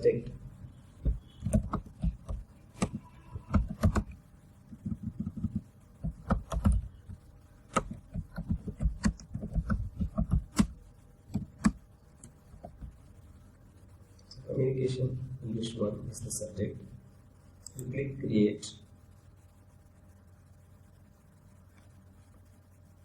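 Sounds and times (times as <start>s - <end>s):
typing on keyboard: 1.0s - 11.8s.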